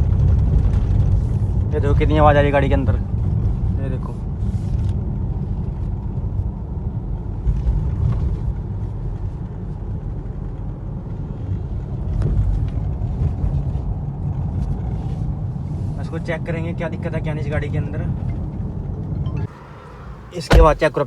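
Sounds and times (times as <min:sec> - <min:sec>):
road rumble inside car: 0:00.0 - 0:16.2, 0:18.1 - 0:21.0
suspension knocks: 0:20.1 - 0:21.0.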